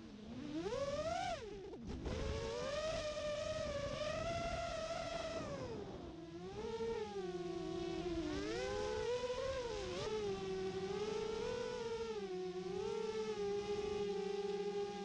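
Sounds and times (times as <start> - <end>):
quadcopter motors whining: 0.3 - 15.0.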